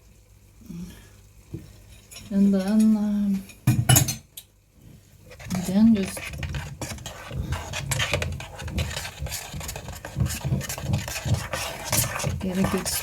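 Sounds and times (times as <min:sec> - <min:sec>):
spoon scraping and knocking dish: 0:05.3 - 0:13.0.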